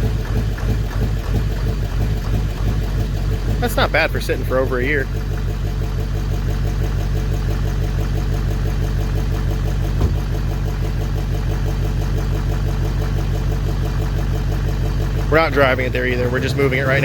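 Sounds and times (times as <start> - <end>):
truck engine idling: 0.0 - 17.0
light knock: 10.0 - 10.3.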